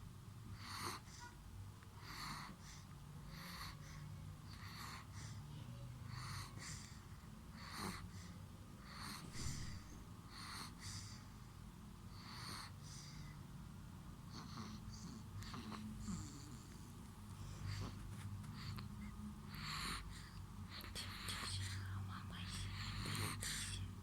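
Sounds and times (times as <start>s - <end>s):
faint low hum: 0.0s - 24.0s
baby snoring: 2.0s - 2.6s, 6.1s - 6.9s, 7.5s - 8.2s, 8.8s - 11.1s, 12.2s - 12.8s, 14.3s - 21.8s, 22.4s - 23.9s.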